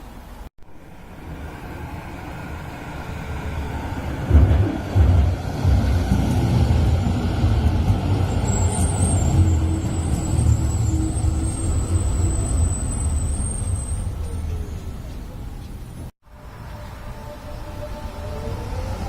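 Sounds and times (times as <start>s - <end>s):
tram rumbling on rails: 0.0s - 19.0s
high wheel squeal: 8.0s - 15.0s.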